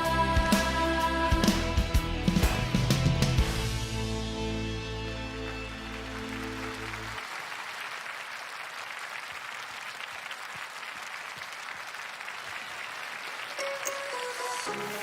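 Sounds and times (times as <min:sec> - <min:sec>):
audience applause: 0:04.9 - 0:15.0.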